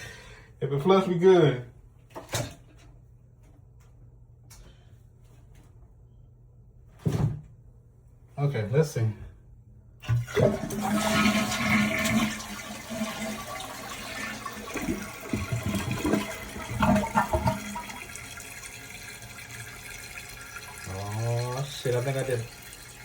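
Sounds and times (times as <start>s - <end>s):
toilet flushing: 10.0s - 23.0s
water running into tank: 10.0s - 23.0s.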